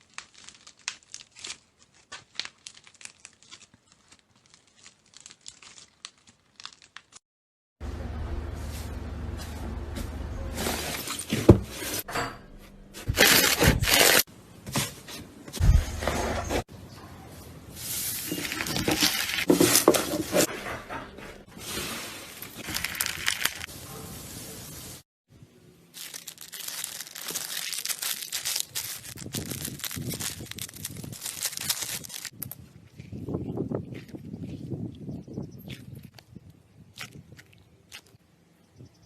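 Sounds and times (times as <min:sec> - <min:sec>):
slime crackling and popping: 0:00.0 - 0:07.2.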